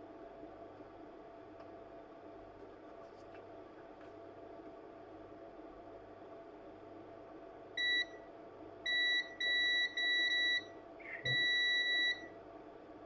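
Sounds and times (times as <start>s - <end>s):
high-pitched tester beeps: 8.9s - 12.3s.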